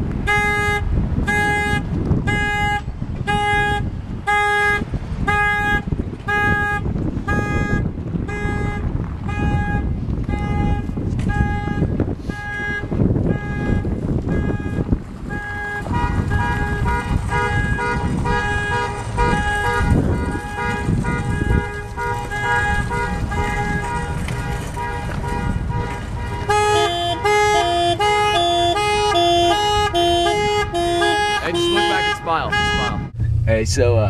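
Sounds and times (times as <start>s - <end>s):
car horn honking: 0.2s - 33.8s
two-note alarm siren: 26.4s - 33.5s.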